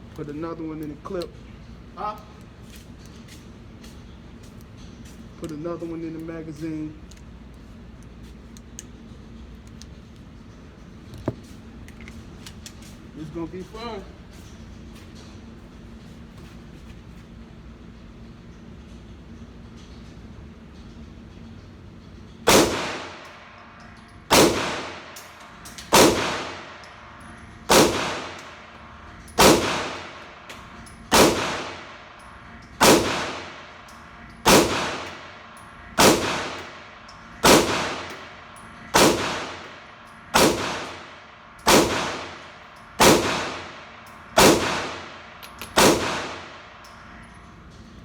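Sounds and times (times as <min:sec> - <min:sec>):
pistol shots with ringing echo: 0:22.5 - 0:28.7, 0:29.3 - 0:47.1.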